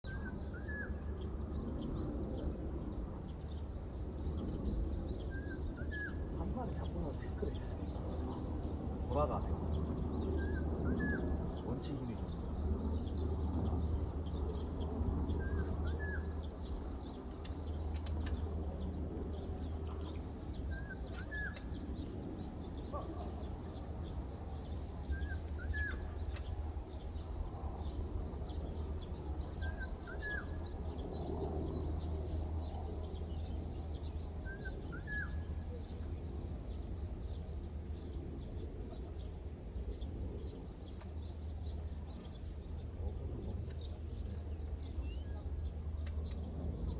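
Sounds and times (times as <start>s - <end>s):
low outdoor rumble: 0.0s - 46.9s
faint clicks: 17.2s - 18.6s, 21.1s - 22.2s, 25.3s - 26.6s, 41.0s - 41.3s, 43.6s - 43.9s, 46.0s - 46.5s.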